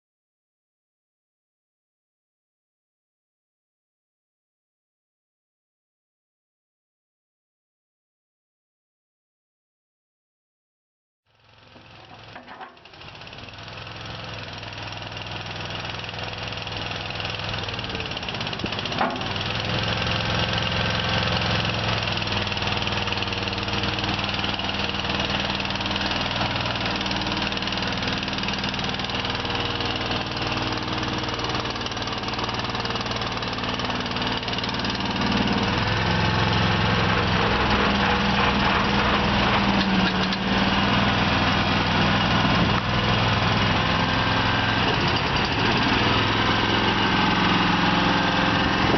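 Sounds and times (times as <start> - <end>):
engine running steadily: 11.4 - 48.9.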